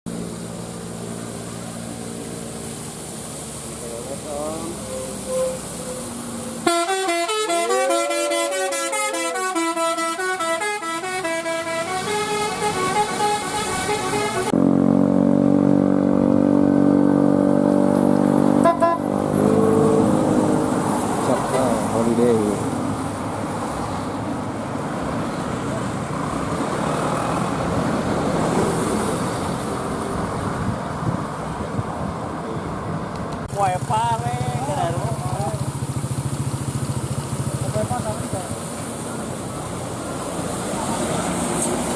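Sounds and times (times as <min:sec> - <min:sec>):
road traffic rumble: 0:00.1 - 0:41.9
tyre hiss: 0:00.2 - 0:14.5
multi-tone air horn melody: 0:04.8 - 0:14.6, 0:18.6 - 0:19.2.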